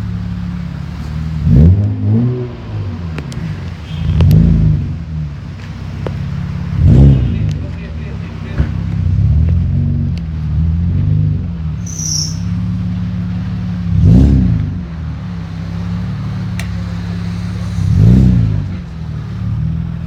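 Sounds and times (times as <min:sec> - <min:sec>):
car engine idling and revving: 0:00.0 - 0:20.0.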